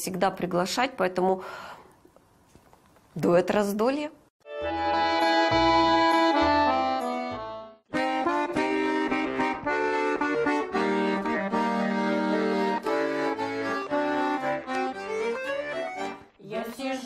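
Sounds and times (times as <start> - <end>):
accordion playing chords: 4.4 - 16.4.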